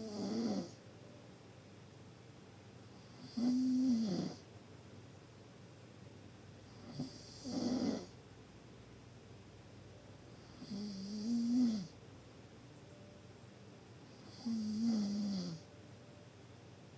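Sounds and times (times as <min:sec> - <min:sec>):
deep snoring: 0:00.0 - 0:00.8, 0:03.1 - 0:04.4, 0:06.8 - 0:08.2, 0:10.5 - 0:12.0, 0:14.2 - 0:15.7.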